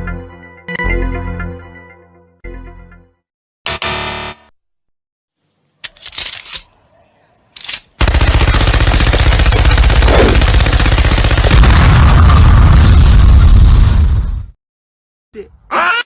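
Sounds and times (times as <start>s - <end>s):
loud very fast rattle: 8.0s - 11.7s.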